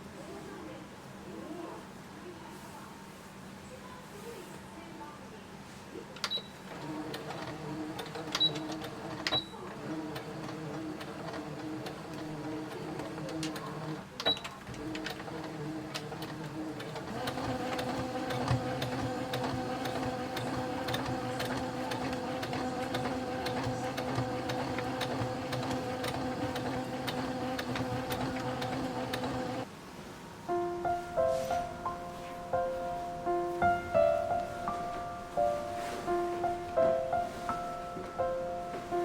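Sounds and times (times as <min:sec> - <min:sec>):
sewing machine stitching: 0:06.2 - 0:29.7.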